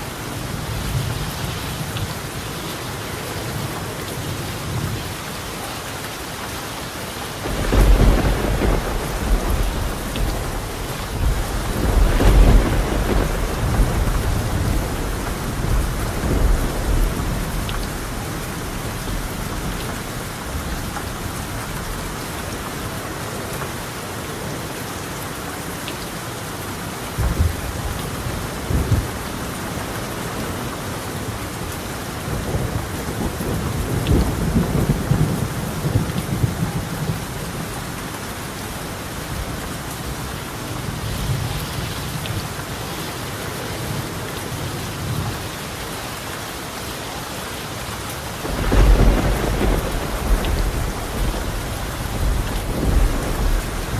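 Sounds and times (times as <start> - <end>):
heavy rain on a tile roof: 0.0 - 53.9
thunder rumbling: 7.4 - 22.2, 32.2 - 38.0, 48.4 - 53.9.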